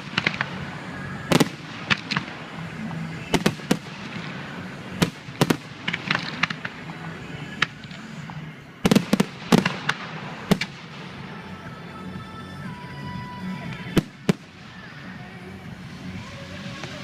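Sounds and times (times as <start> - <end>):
fireworks bangs: 0.0 - 11.9, 13.7 - 15.3.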